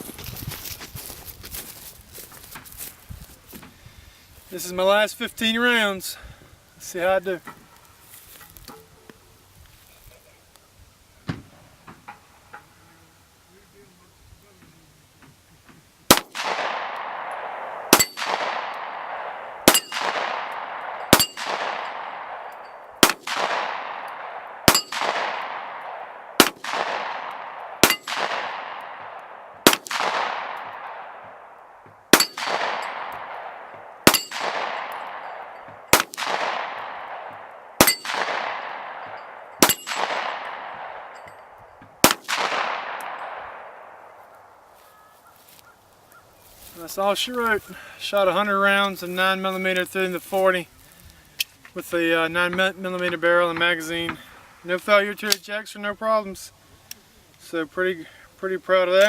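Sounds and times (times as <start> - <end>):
pistol shots with ringing: 16.1 - 44.6.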